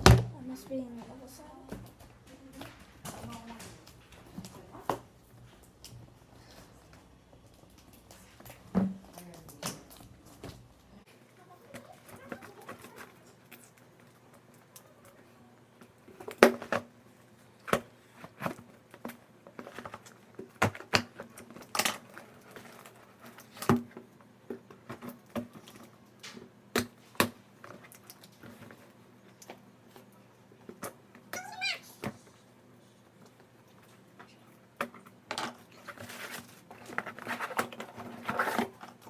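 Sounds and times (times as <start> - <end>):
toy box clicking and knocking: 11.7 - 13.7.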